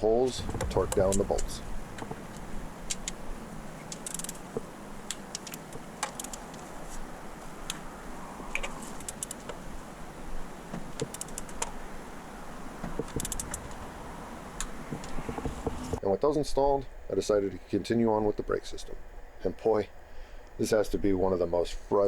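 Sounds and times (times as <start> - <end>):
low hiss: 0.0 - 22.0
hand tools clicking metallically: 2.3 - 6.6, 8.6 - 9.6.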